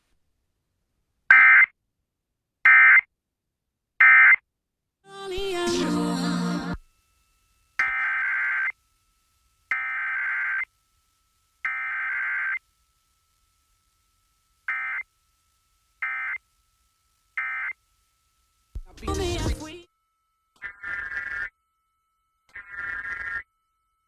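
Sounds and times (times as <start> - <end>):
harsh buzzy data bursts: 7.8 - 8.8, 9.6 - 10.7, 11.6 - 12.6, 14.6 - 15.1, 16.0 - 16.4, 17.3 - 17.8, 18.8 - 19.9, 20.6 - 21.5, 22.5 - 23.5.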